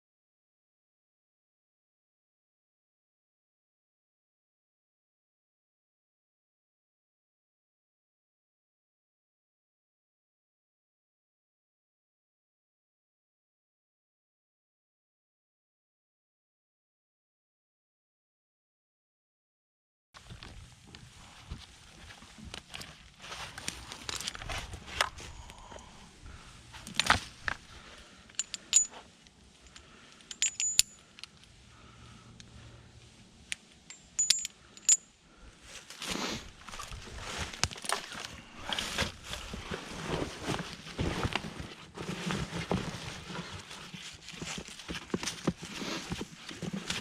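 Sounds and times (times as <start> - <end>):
scraping and rustling: 20.2 - 25.4, 35.7 - 47.0
metal hardware clinking: 28.3 - 29.0, 30.2 - 31.3, 33.9 - 35.0.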